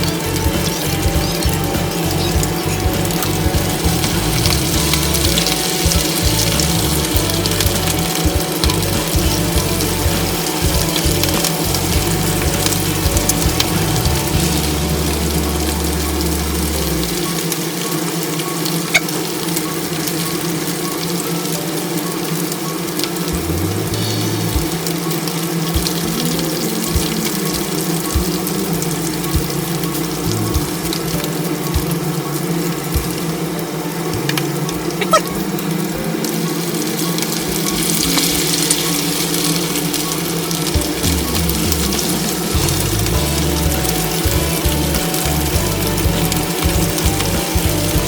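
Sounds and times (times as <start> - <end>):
low hum: 0.0 - 17.3, 25.7 - 33.2, 37.6 - 48.0
food deep-frying in hot oil: 0.0 - 48.0.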